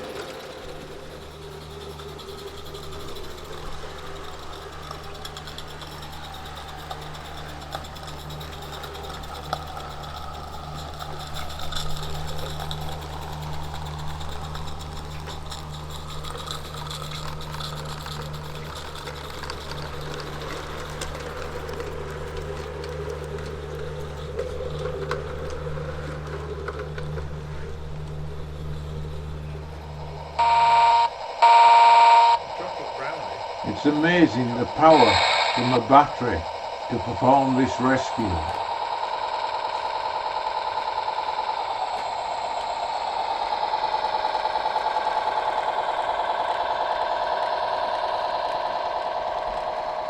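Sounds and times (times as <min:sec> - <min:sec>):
model locomotive engine hum: 0:00.0 - 0:50.0
electronic horn toots: 0:30.3 - 0:36.5.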